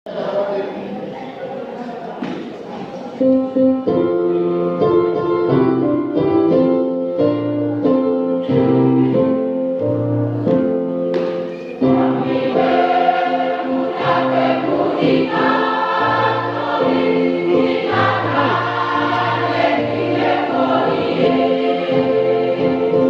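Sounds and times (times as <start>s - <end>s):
choir singing a hymn: 11.5s - 23.0s
low bass voices: 16.2s - 23.0s.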